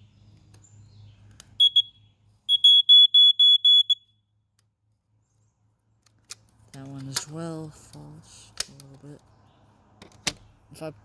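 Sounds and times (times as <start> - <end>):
smoke alarm beeping: 1.6 - 4.1.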